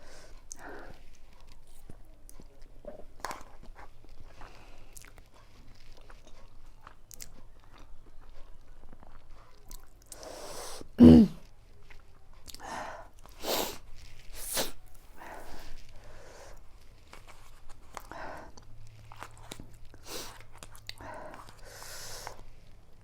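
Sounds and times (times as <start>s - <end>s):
soft chewing: 0.0s - 23.0s
sharp hissing breaths: 10.2s - 10.9s, 21.6s - 22.4s
loud throat sound: 11.0s - 11.4s.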